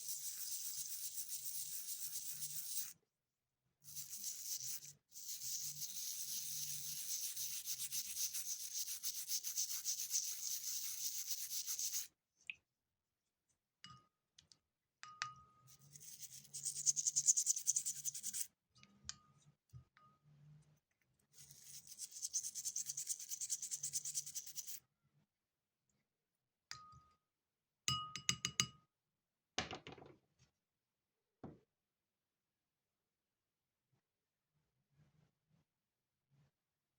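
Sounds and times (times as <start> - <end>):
scrubbing a coin: 0.0 - 3.0, 3.8 - 12.1, 15.7 - 18.5, 21.3 - 24.8.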